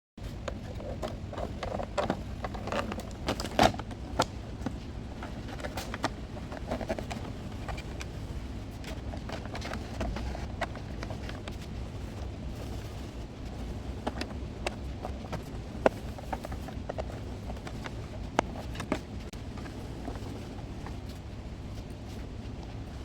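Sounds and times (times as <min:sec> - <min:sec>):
steady low hum: 0:00.2 - 0:23.0
clicks and knocks of handling: 0:00.3 - 0:08.2, 0:13.9 - 0:21.2.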